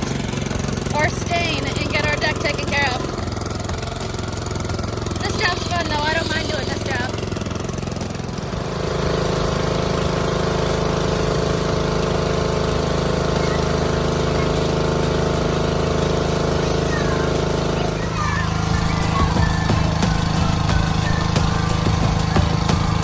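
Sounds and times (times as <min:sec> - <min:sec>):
pressure washer engine drone: 0:00.0 - 0:23.0
hiss of water spray: 0:08.0 - 0:23.0.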